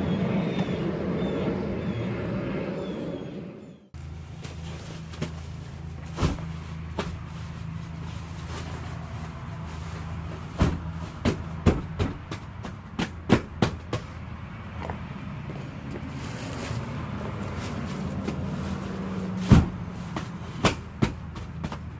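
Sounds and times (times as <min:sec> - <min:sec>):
sharp thumps and knocks: 0:10.5 - 0:14.2, 0:19.4 - 0:21.9.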